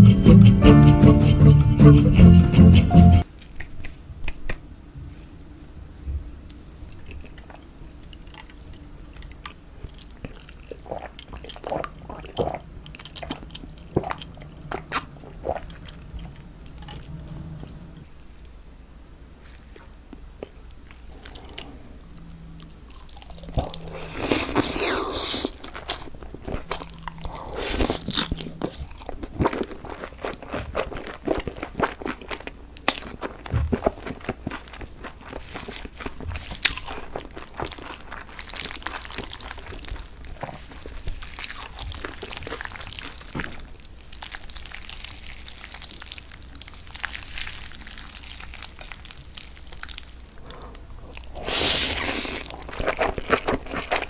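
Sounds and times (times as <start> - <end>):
wet chewing and smacking: 6.9 - 17.8, 19.5 - 54.0
loud crunching bites: 51.4 - 54.0.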